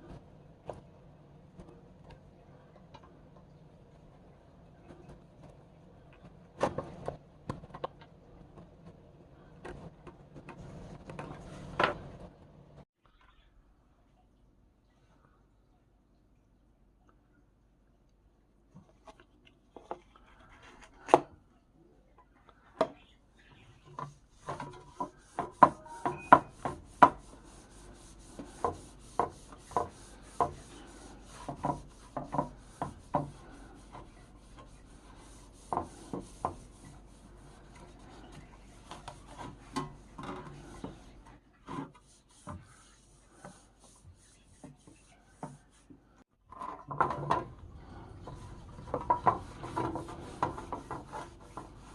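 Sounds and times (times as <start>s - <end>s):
scraping on wood: 23.8s - 51.9s.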